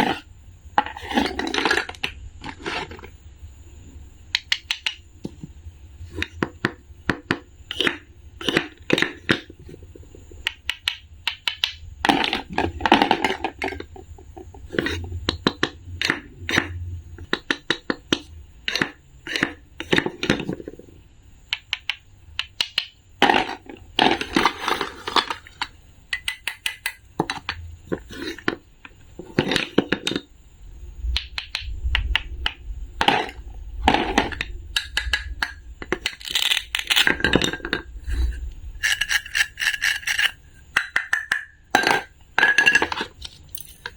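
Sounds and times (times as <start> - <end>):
small hard objects clicking: 24.3 - 27.6, 34.0 - 43.9.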